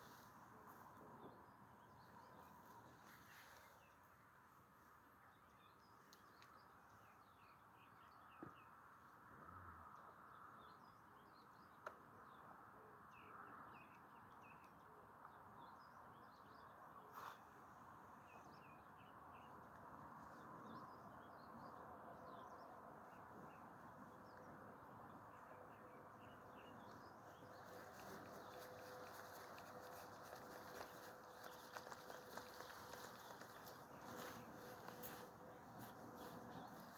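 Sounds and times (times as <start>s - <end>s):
birds chirping: 20.3s - 36.9s.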